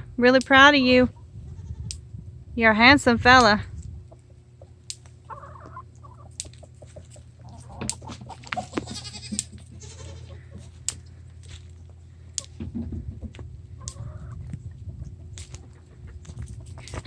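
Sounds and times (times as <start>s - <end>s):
low steady rumble: 0.0s - 17.0s
chickens clucking: 1.0s - 2.2s, 3.6s - 17.0s
goat calls: 7.5s - 10.7s.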